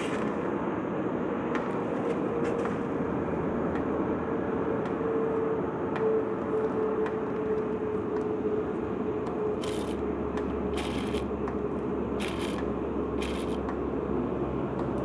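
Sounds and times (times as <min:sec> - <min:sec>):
car engine mechanical din: 0:09.6 - 0:11.5, 0:12.1 - 0:13.8.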